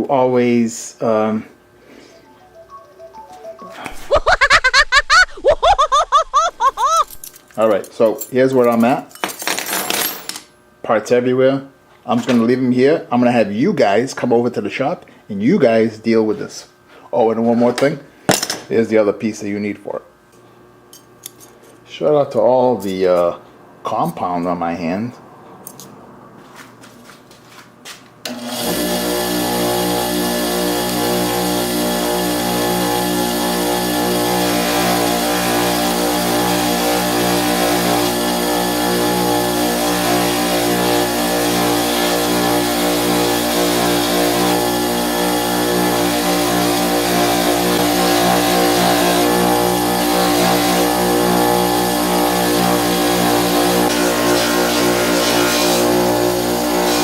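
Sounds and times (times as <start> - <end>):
grinder motor humming and whirring: 28.3 - 57.0.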